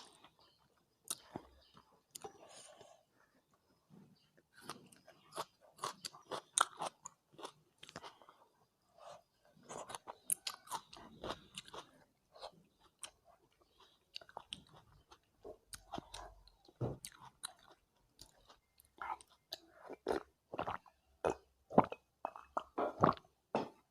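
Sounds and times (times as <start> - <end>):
chewing with wet mouth clicks: 4.4 - 8.4, 9.6 - 23.2.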